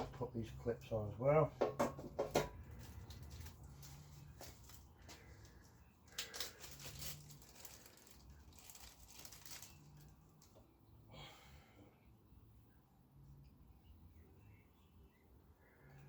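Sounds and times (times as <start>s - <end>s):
small parts clicking and rustling: 2.2s - 10.7s.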